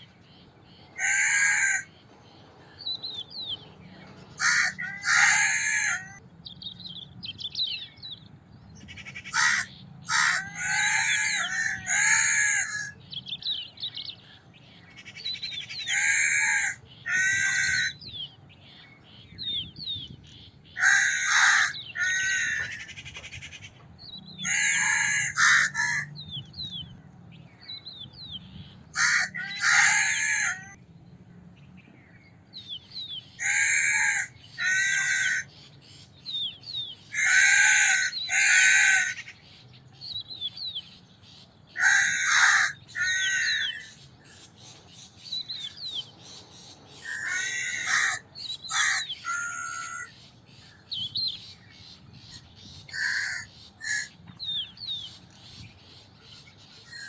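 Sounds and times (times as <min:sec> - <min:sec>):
small birds chirping: 0:00.0 - 0:57.0
crow cawing: 0:01.0 - 0:01.9, 0:04.4 - 0:06.2, 0:09.1 - 0:13.0, 0:15.9 - 0:18.0, 0:20.8 - 0:22.9, 0:24.4 - 0:26.1, 0:29.0 - 0:30.8, 0:33.4 - 0:35.5, 0:37.2 - 0:39.3, 0:41.8 - 0:43.9, 0:47.0 - 0:50.1, 0:52.9 - 0:54.1.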